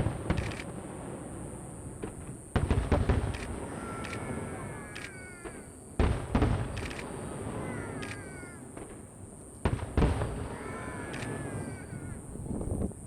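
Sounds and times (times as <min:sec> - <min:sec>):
fireworks bursting with booms: 0:00.0 - 0:13.0
high falling cries: 0:03.4 - 0:08.8, 0:10.1 - 0:12.4.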